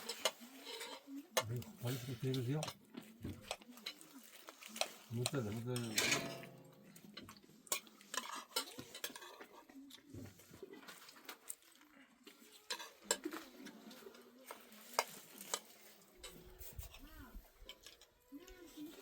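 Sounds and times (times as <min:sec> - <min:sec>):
hard objects clinking: 0:00.0 - 0:09.4
faint voices: 0:00.0 - 0:19.0.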